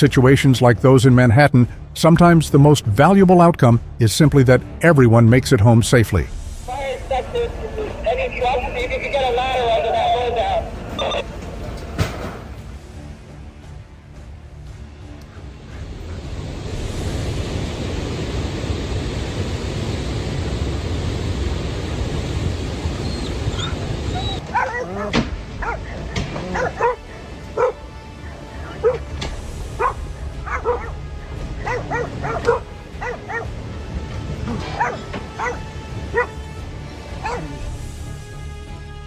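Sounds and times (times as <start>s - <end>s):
steady rushing noise: 15.3s - 38.1s
dog yipping and barking: 22.9s - 27.8s, 28.6s - 29.1s, 29.8s - 31.0s, 31.6s - 33.5s, 34.6s - 36.4s, 37.2s - 37.6s.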